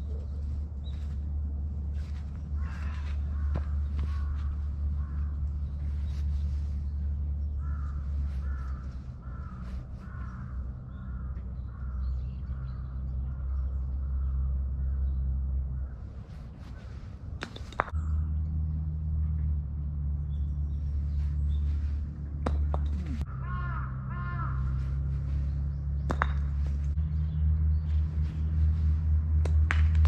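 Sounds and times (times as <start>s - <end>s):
low rumble: 0.0s - 30.0s
crow cawing: 2.5s - 5.7s, 7.5s - 15.0s, 23.2s - 25.0s.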